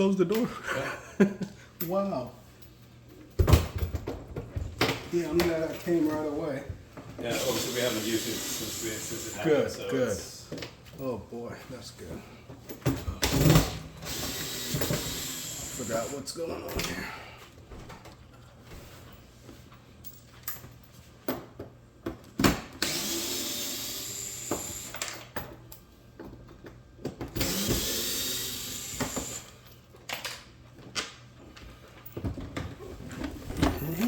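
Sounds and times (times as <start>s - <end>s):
cordless drill running: 7.3s - 9.5s, 13.4s - 16.2s, 22.8s - 25.1s, 27.4s - 29.6s.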